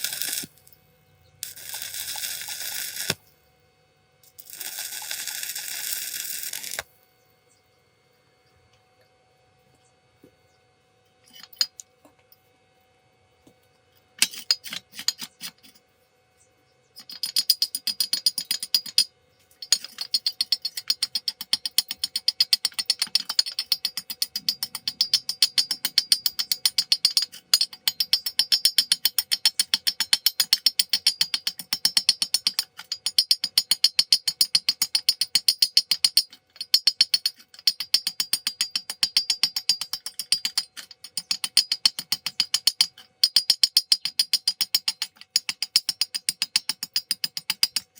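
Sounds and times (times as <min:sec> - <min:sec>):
welding arc crackling: 0:00.0 - 0:00.8, 0:01.4 - 0:03.3, 0:04.2 - 0:06.9.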